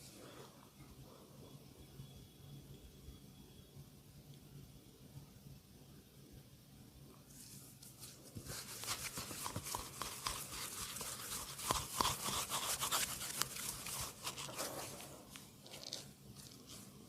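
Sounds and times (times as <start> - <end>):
hands rubbing on hair and skin: 7.4 - 17.0.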